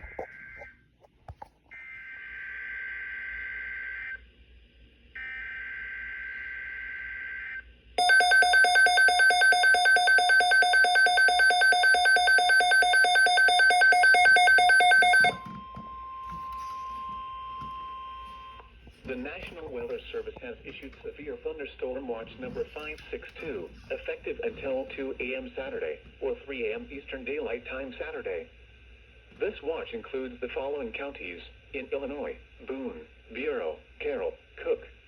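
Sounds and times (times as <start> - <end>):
steady low warning tone: 8.0 - 24.1.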